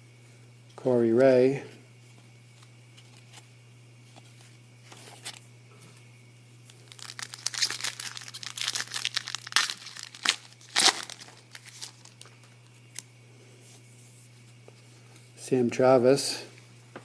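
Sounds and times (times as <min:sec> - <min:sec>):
foil wrapper crinkling and tearing: 0:06.7 - 0:13.0.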